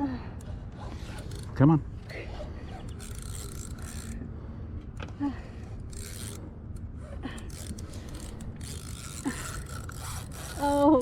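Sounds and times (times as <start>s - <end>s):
fishing reel scraping: 1.0s - 4.2s, 5.8s - 6.5s, 7.2s - 11.0s.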